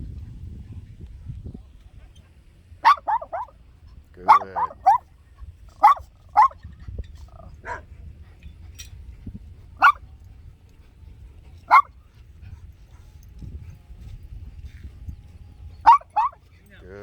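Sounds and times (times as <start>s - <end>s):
dog barking: 2.8s - 3.6s, 4.2s - 5.1s, 5.8s - 6.6s, 7.4s - 7.9s, 9.8s - 10.1s, 11.6s - 11.9s, 15.8s - 16.4s.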